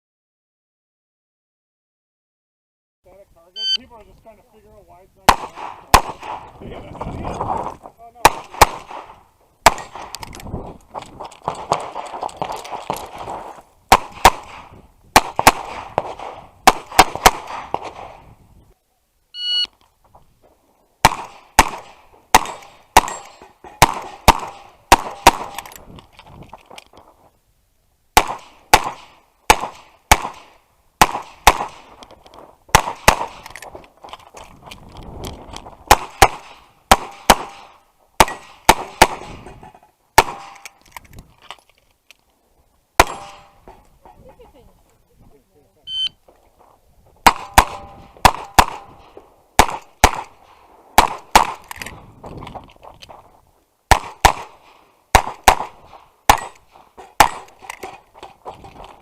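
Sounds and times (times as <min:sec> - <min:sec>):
electronic shot-timer beep: 0:03.6 - 0:03.8, 0:19.4 - 0:19.7
revolver gunshots echoing: 0:05.2 - 0:06.6, 0:08.2 - 0:10.2, 0:11.4 - 0:18.3, 0:21.0 - 0:25.7, 0:28.2 - 0:32.0, 0:32.7 - 0:33.5, 0:35.8 - 0:39.5, 0:40.2 - 0:40.7, 0:43.0 - 0:43.7, 0:47.2 - 0:51.7, 0:53.9 - 0:57.6.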